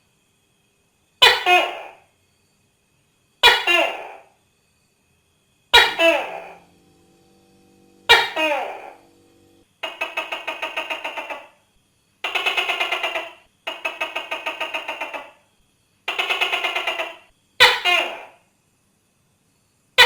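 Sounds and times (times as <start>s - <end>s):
gecko calling: 3.4s - 4.3s, 5.7s - 9.0s, 9.8s - 11.6s, 12.2s - 15.4s, 16.1s - 18.4s.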